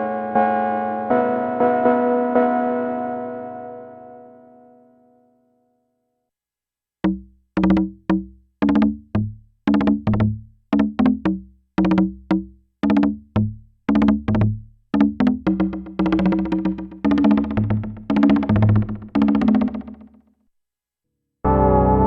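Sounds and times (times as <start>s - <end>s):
synthesizer woody percussive notes: 7.0s - 20.2s.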